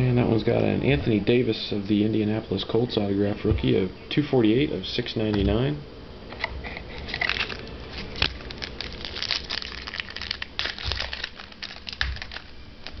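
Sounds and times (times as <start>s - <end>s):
wrapper crinkling and tearing: 6.9s - 13.0s.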